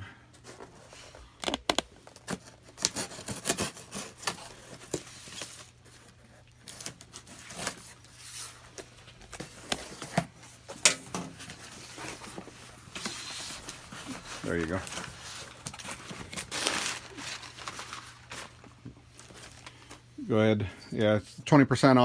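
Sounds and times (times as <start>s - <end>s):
cardboard rubbing and scraping: 11.4s - 18.6s.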